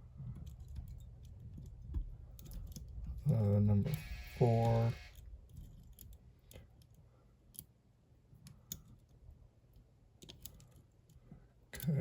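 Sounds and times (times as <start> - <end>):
faint metallic lock pick clicks: 8.4 - 9.1.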